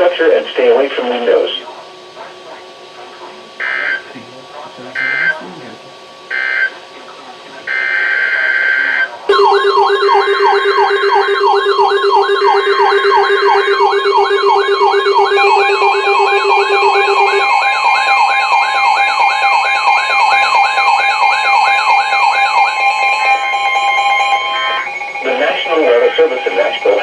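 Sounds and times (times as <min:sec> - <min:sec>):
electronic siren alarm: 0:03.6 - 0:04.2, 0:05.0 - 0:05.4, 0:06.3 - 0:06.8, 0:07.7 - 0:27.0
buzzing digital data bursts: 0:05.0 - 0:05.4, 0:07.7 - 0:27.0
steady beeping tones: 0:07.7 - 0:27.0.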